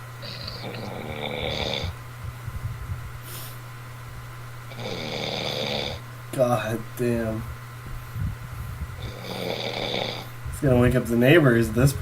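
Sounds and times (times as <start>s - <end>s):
man snoring heavily: 0.2s - 2.0s, 4.7s - 6.0s, 9.0s - 10.3s.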